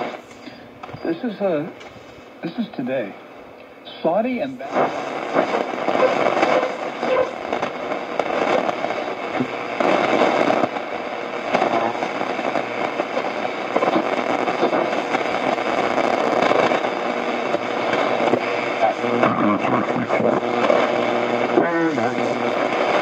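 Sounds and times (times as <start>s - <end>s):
radio static hiss and crackle: 0.0s - 23.0s.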